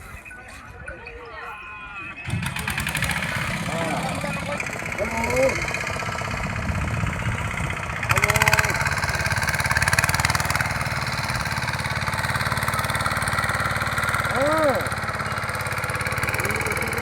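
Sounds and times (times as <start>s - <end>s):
small engine running: 2.2s - 17.0s.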